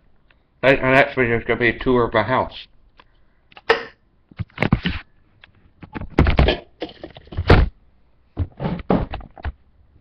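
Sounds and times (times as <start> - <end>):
knocks and thumps: 5.8 - 7.8, 8.4 - 9.6.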